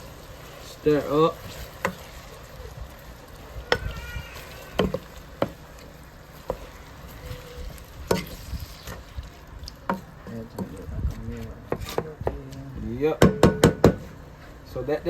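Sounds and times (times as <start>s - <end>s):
vegetables frying in a pot: 0.0s - 11.1s.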